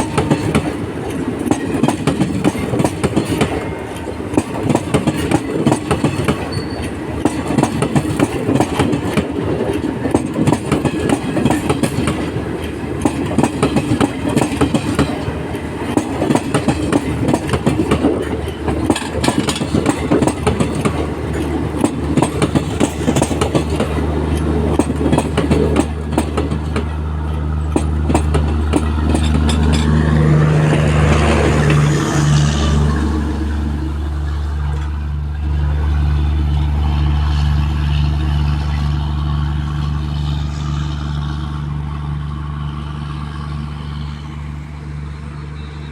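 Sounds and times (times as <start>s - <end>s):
train wheels clickety-clack: 0.0s - 35.0s
low engine drone: 25.9s - 45.9s.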